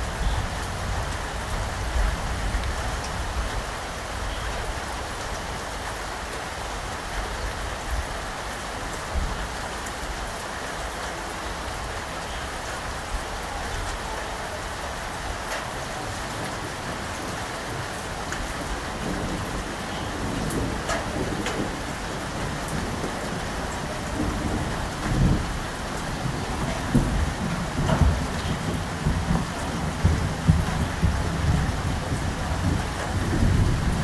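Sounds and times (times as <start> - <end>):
steady rain falling: 0.0 - 34.0.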